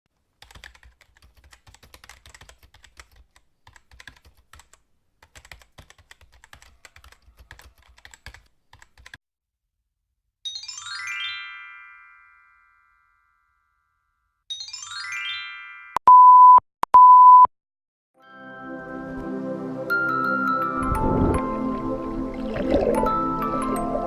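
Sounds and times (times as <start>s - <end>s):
typing on computer keyboard: 0.4s - 9.2s.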